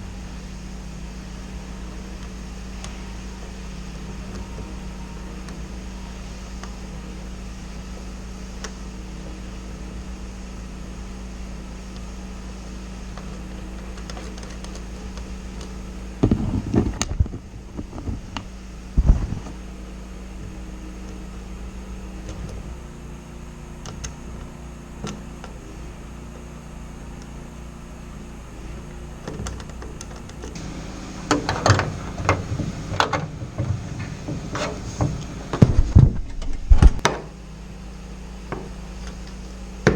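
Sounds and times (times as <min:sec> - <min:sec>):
steady mechanical hum: 0:00.0 - 0:39.9
clattering knocks: 0:16.2 - 0:19.7, 0:29.3 - 0:39.9
metallic knocks: 0:30.3 - 0:37.4, 0:38.4 - 0:39.9.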